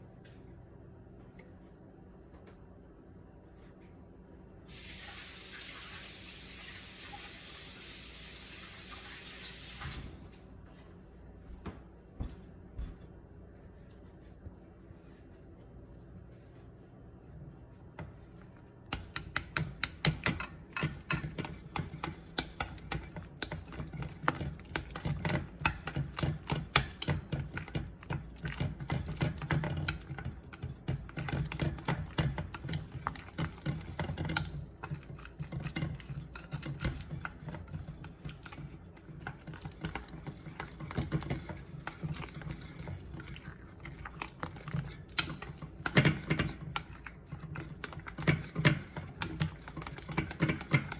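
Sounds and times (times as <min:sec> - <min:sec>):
kitchen utensils clicking and tapping: 0:18.9 - 0:42.6, 0:44.2 - 0:50.9.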